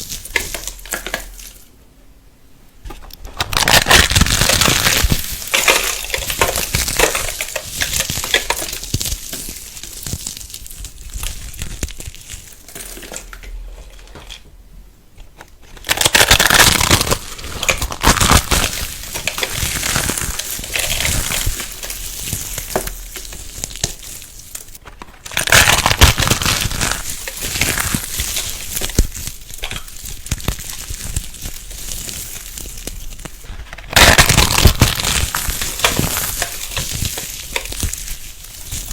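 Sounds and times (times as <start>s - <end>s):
crunchy material being cut and crushed: 2.9s - 14.4s, 15.3s - 38.9s.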